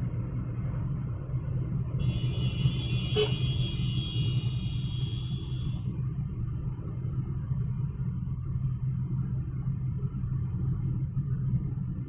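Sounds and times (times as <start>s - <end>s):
car cabin engine and road drone: 0.0s - 12.0s.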